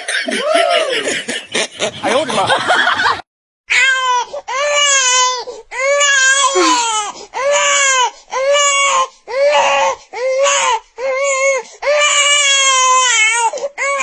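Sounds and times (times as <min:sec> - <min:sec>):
baby crying: 0:03.7 - 0:14.0.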